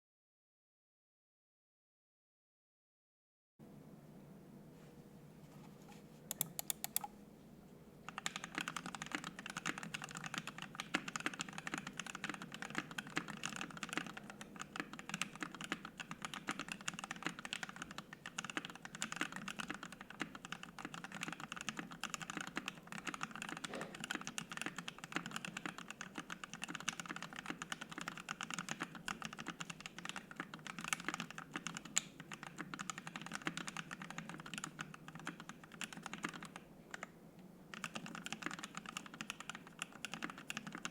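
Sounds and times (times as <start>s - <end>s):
fast typing on mechanical keyboard: 8.1s - 37.1s, 37.7s - 40.9s.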